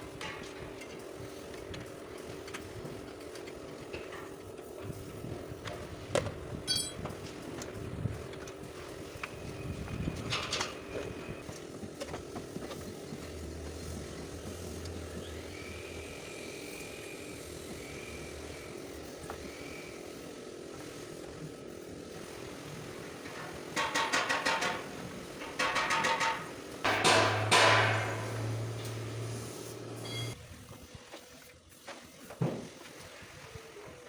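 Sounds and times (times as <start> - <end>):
workshop background noise: 0.0 - 32.9
hammer on sheet metal: 25.6 - 28.8.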